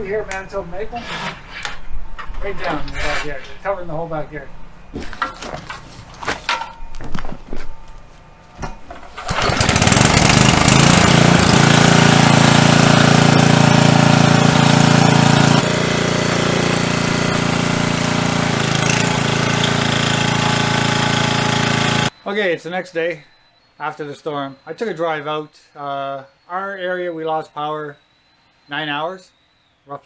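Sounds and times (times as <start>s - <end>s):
generator engine running: 9.1s - 22.1s.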